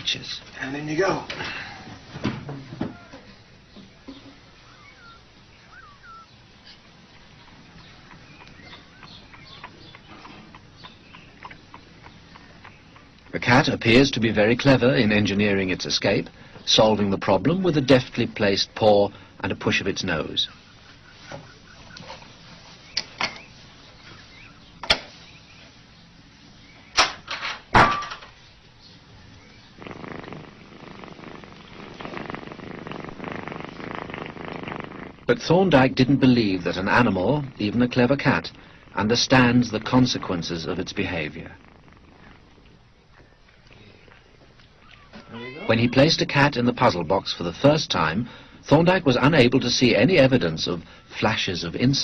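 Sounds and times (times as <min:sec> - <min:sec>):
light ticks: 0:07.4 - 0:13.4.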